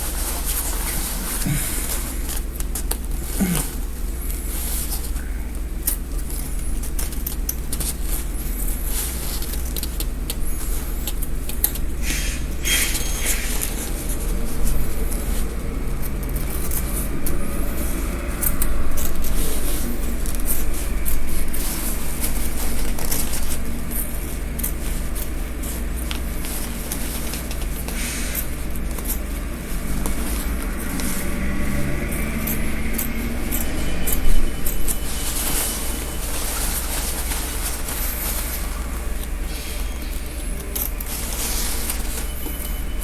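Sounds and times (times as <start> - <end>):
fabric rustling: 0.0 - 43.0.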